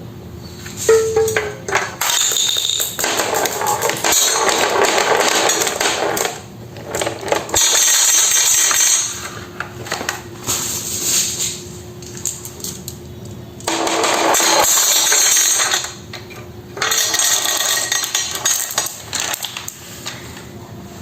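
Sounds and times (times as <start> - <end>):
marbles clattering down marble run: 1.7 - 9.1, 13.7 - 16.0, 16.8 - 19.6.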